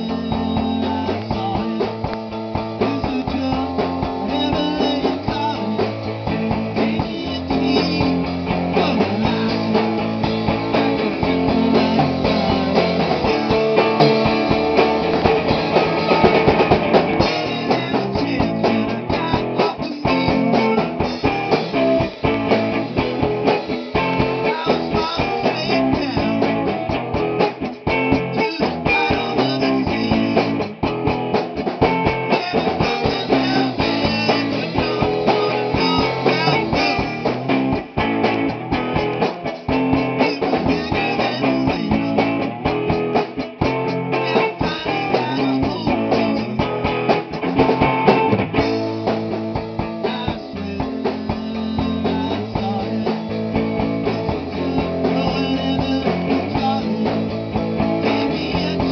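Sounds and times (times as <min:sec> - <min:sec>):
drum kit: 0:00.0 - 0:58.9
electric guitars: 0:00.0 - 0:58.9.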